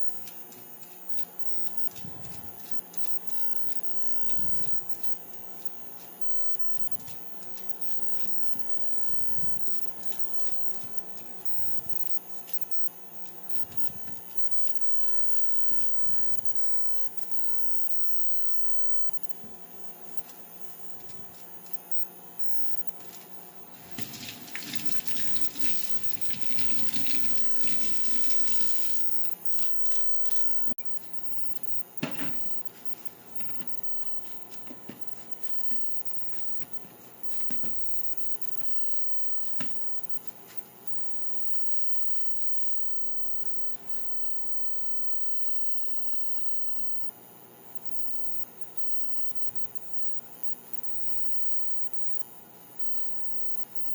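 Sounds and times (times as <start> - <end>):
kitchen tap running: 23.7 - 29.1.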